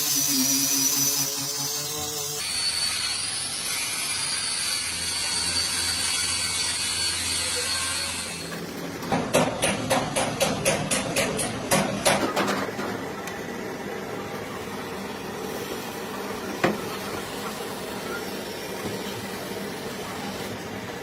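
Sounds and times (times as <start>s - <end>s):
steady background hum: 8.5s - 21.0s.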